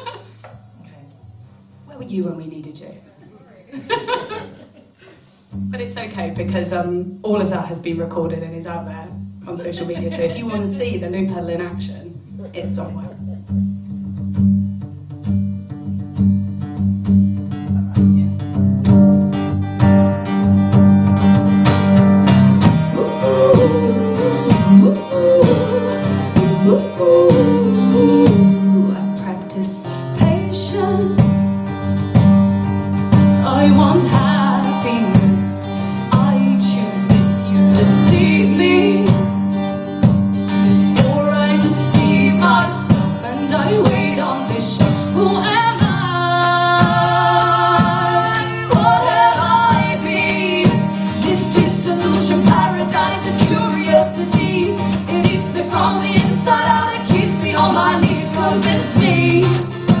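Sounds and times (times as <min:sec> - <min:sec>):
strummed guitar: 0:08.2 - 1:00.0
woman singing: 0:09.5 - 0:11.7, 0:22.9 - 0:31.4, 0:33.4 - 0:35.4, 0:36.1 - 0:39.4, 0:41.0 - 1:00.0.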